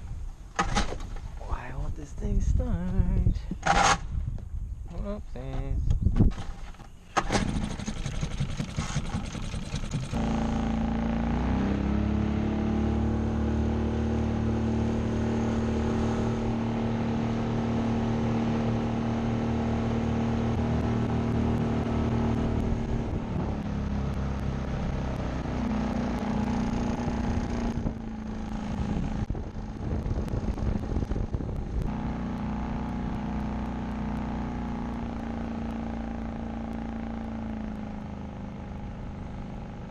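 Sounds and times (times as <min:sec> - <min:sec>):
outboard motor running: 0:07.2 - 0:24.6, 0:25.4 - 0:39.9.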